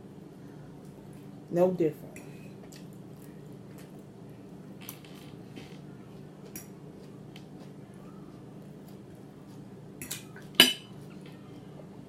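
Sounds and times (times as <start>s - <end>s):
steady low hum: 0.0s - 12.0s
cutlery clicking against a plate: 10.0s - 10.9s.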